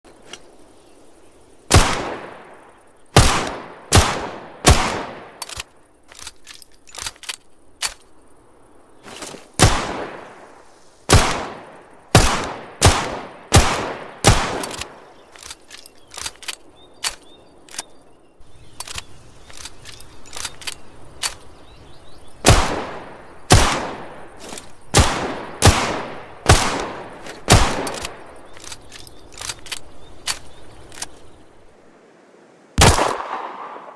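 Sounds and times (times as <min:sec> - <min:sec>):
revolver gunshots: 0:01.7 - 0:02.6, 0:03.2 - 0:05.4, 0:09.6 - 0:10.5, 0:11.1 - 0:15.0, 0:22.4 - 0:24.3, 0:24.9 - 0:28.2, 0:32.8 - 0:33.9.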